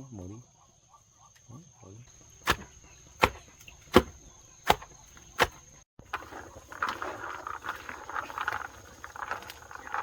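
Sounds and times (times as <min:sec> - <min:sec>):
knife chopping bananas on board: 0:02.4 - 0:05.6.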